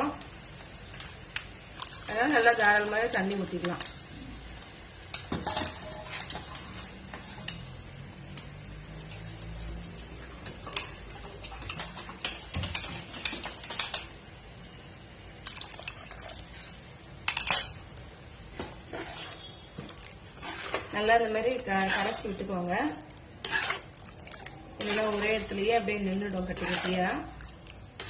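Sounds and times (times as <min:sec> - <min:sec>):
spoon scraping a metal pan: 0:18.8 - 0:22.5, 0:23.4 - 0:23.9, 0:24.8 - 0:27.3.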